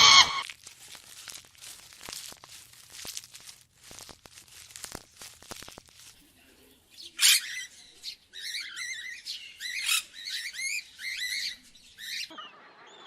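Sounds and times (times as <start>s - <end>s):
crackling rustling noise: 0.0s - 7.1s.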